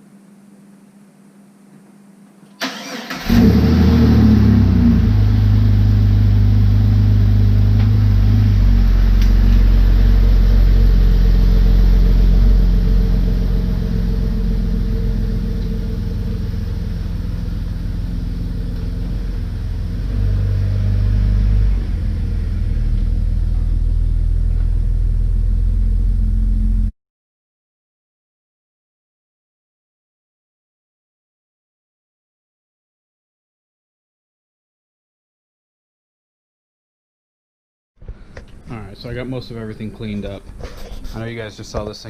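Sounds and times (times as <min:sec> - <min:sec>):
vehicle engine starting and running: 0:02.6 - 0:26.9.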